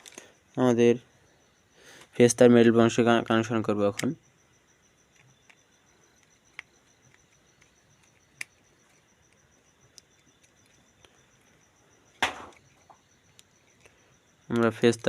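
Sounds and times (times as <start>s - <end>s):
cricket chirping: 0.0s - 15.0s
loud knock: 12.2s - 12.6s.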